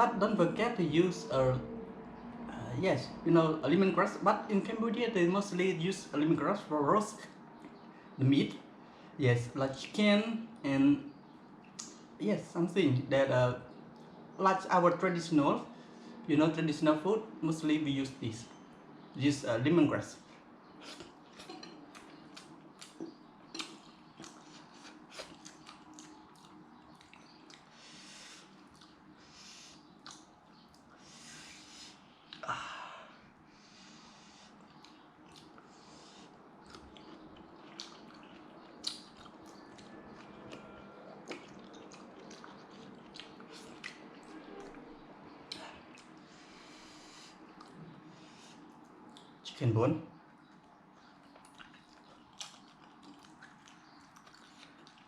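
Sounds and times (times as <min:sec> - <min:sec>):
person chewing food: 0:20.8 - 0:30.9, 0:33.8 - 0:44.8, 0:45.5 - 0:46.7, 0:47.5 - 0:49.4, 0:50.4 - 0:55.0
wet mouth clicks and smacks: 0:30.0 - 0:30.8, 0:36.6 - 0:39.6.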